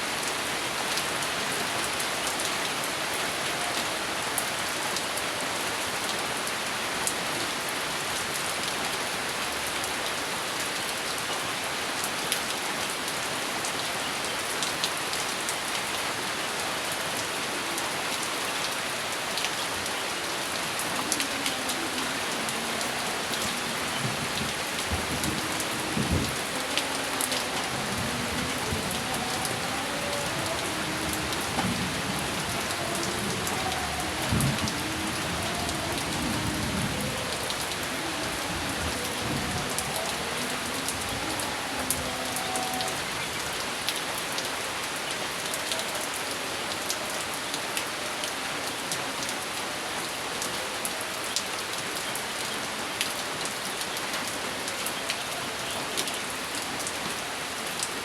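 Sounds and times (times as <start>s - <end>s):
steady rain: 0.0s - 58.0s.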